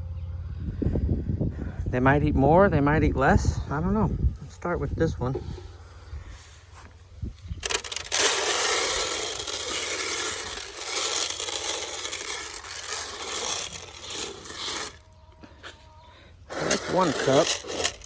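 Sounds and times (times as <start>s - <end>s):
feed scooped and poured: 7.6s - 15.0s, 16.5s - 18.0s.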